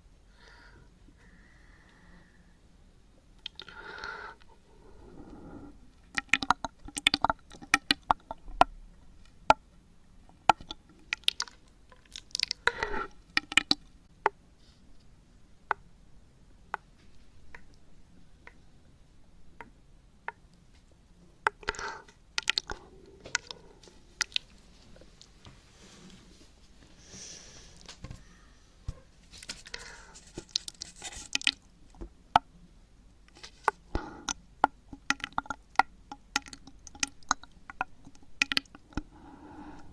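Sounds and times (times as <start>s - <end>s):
wet mouth clicks and smacks: 3.4s - 3.8s, 6.1s - 8.5s, 10.5s - 13.9s, 21.4s - 24.5s, 33.6s - 39.1s
breathy puffs: 27.0s - 30.4s.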